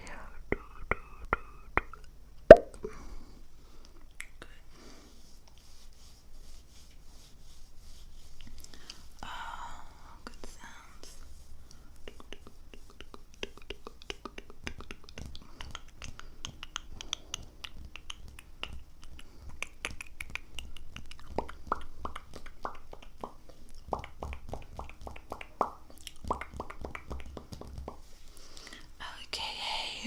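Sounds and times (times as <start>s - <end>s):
wet mouth clicks and pops: 0.9s - 2.9s, 12.1s - 28.0s.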